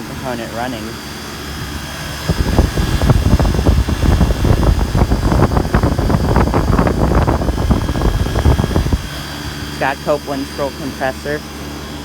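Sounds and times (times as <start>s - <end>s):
air conditioner compressor running: 0.0s - 12.0s
wind buffeting microphone: 1.4s - 9.8s.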